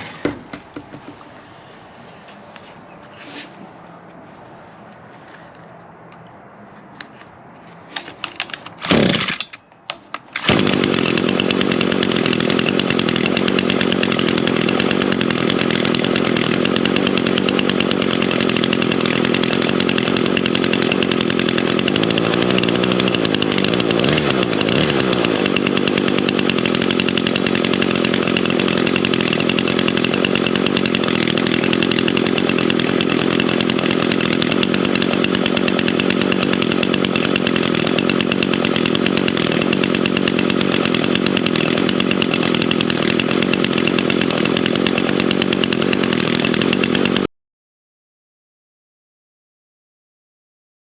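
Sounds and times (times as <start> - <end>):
string trimmer pull-starting: 0.0 - 1.0, 7.9 - 47.3
string trimmer engine running: 0.0 - 1.2, 7.9 - 47.3.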